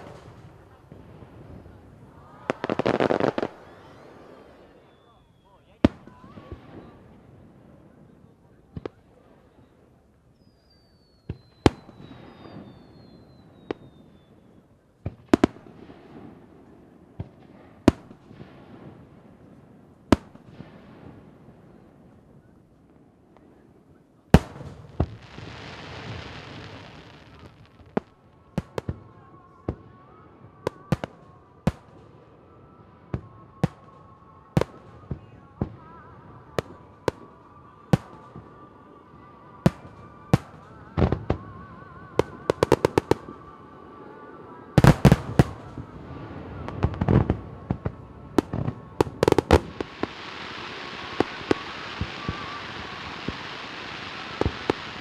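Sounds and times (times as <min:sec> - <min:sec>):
fireworks hissing crackle: 0:00.0 - 0:08.0, 0:24.3 - 0:29.3, 0:33.2 - 0:55.0
fireworks bangs: 0:00.0 - 0:09.8, 0:10.8 - 0:23.7, 0:24.3 - 0:55.0.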